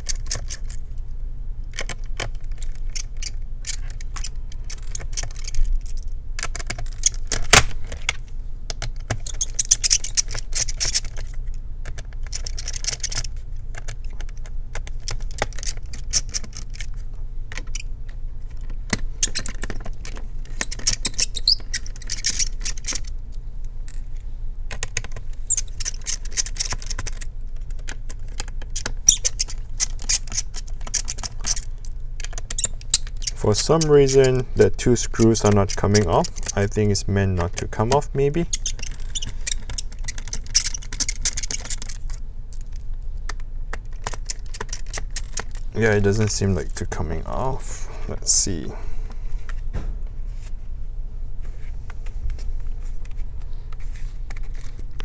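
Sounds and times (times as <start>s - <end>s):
screwdriver clicking and scraping plastic: 0.0s - 0.8s, 1.7s - 17.9s, 18.5s - 23.1s, 23.9s - 47.2s
steady low hum: 29.5s - 55.0s.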